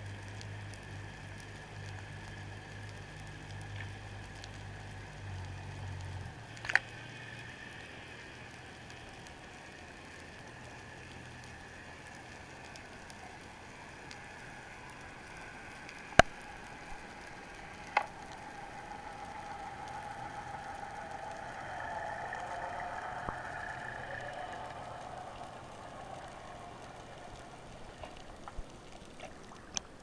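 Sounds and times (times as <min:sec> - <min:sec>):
boat motor drone underwater: 0:00.0 - 0:30.0
underwater sea hiss: 0:11.8 - 0:28.6.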